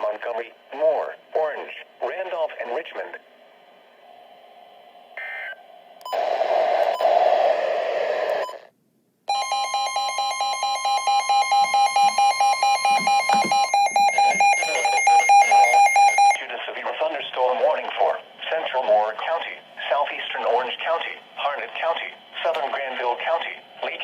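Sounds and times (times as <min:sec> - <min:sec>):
radio static: 0:00.0 - 0:03.2, 0:11.8 - 0:24.0
pulsing alarm beep: 0:09.3 - 0:16.4
steady high tone: 0:09.3 - 0:16.4.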